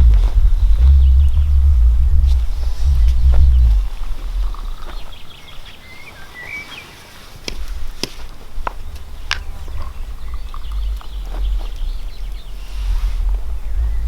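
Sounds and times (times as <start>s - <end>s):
low rumble: 0.0s - 5.4s, 8.5s - 14.0s
bird chirp: 0.0s - 14.0s.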